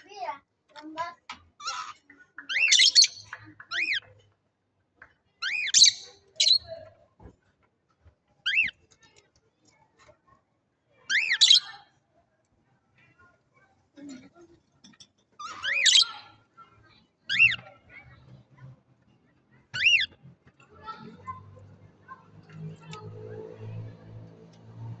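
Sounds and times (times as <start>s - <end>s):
budgerigar chirps: 1.6s - 4.0s, 5.4s - 6.7s, 8.5s - 8.7s, 11.1s - 11.7s, 15.4s - 16.2s, 17.3s - 17.6s, 19.8s - 20.1s.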